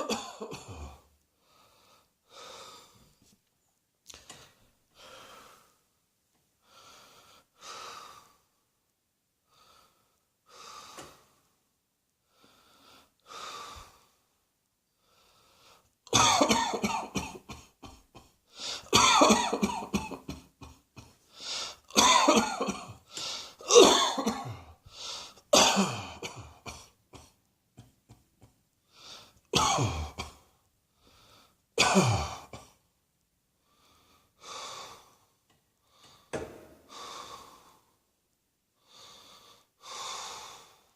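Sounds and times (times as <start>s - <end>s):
person coughing: 0.0s - 1.0s, 16.1s - 21.2s, 21.9s - 23.0s, 23.6s - 24.8s, 25.6s - 27.9s, 29.6s - 30.5s, 31.8s - 32.8s.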